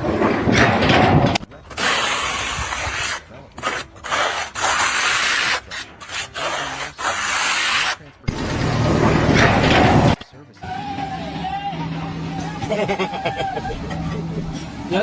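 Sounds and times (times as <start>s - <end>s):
scraping strokes: 0.0s - 11.5s.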